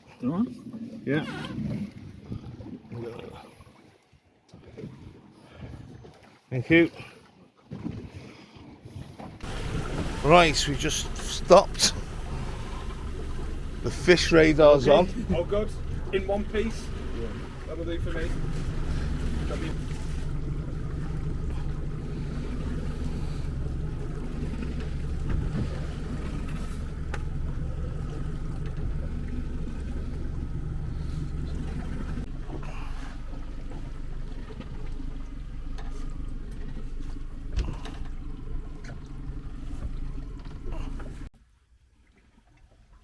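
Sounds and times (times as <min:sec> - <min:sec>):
water lapping boat: 0:00.0 - 0:43.0
boat engine idling: 0:09.4 - 0:41.3.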